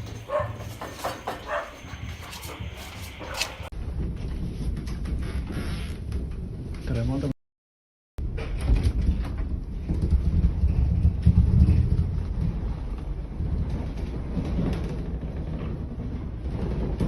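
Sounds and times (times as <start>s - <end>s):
building knocks and rattles: 0.0s - 5.2s, 8.2s - 17.0s
earthquake deep rumbling: 3.7s - 7.2s, 8.2s - 17.0s.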